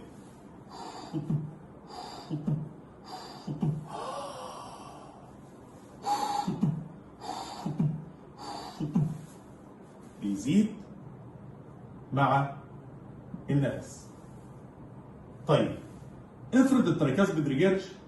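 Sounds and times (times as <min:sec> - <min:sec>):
breathy in-breath sound: 0:00.7 - 0:05.4, 0:06.0 - 0:09.4
man imitating heartbeats with mouth: 0:00.8 - 0:04.6, 0:06.1 - 0:09.2.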